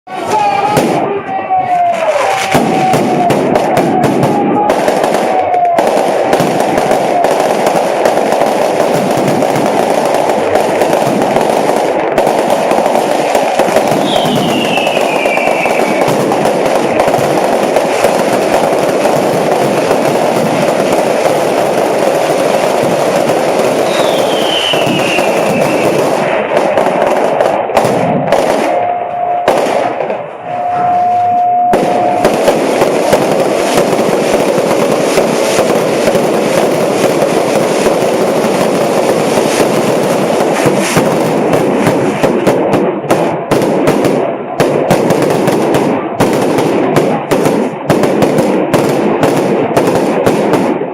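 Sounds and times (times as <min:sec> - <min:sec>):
firework bangs: 0:00.1 - 0:50.9
fireworks crackling and popping: 0:00.1 - 0:50.9
falling firework whistle: 0:13.2 - 0:20.9, 0:23.6 - 0:26.2, 0:28.2 - 0:34.5.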